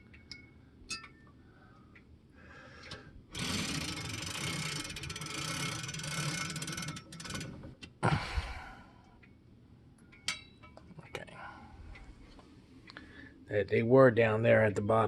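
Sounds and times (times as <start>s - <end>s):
clock chain rattling: 3.3s - 7.6s.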